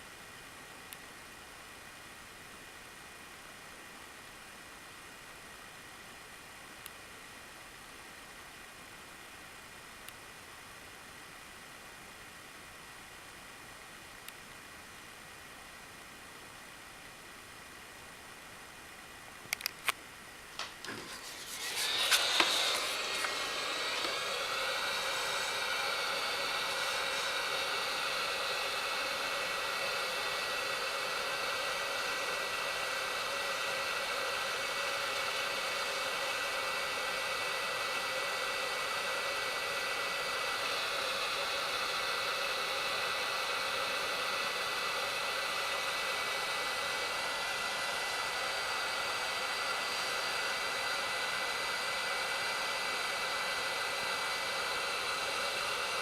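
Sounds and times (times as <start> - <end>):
thin steady whine: 0.0 - 56.0
hot air gun blowing: 21.2 - 32.9.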